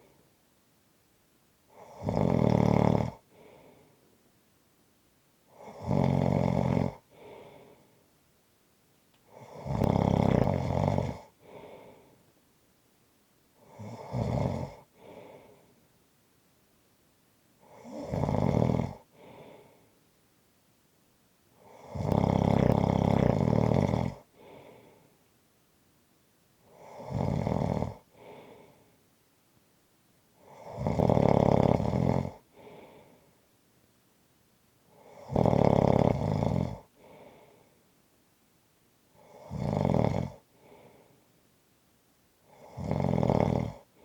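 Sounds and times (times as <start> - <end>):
person snoring: 1.7 - 3.8, 5.5 - 7.8, 9.3 - 12.1, 13.6 - 15.7, 17.6 - 19.8, 21.6 - 25.0, 26.7 - 28.8, 30.4 - 33.2, 34.9 - 37.6, 39.2 - 41.1, 42.5 - 44.0.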